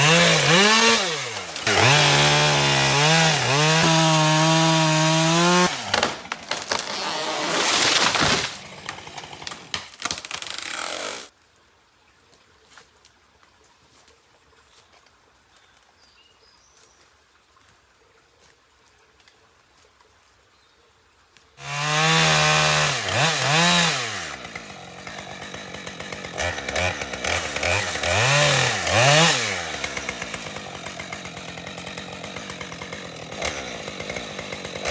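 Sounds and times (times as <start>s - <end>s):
chainsaw revving and cutting wood: 0.0s - 11.3s, 21.6s - 34.9s.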